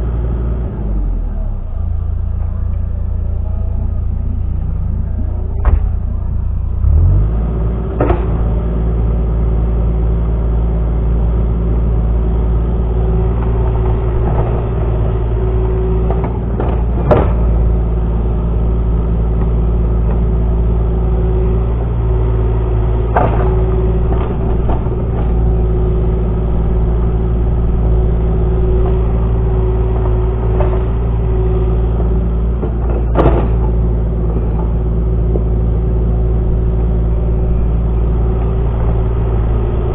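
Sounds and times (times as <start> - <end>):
excavator engine whining: 0.0 - 39.9.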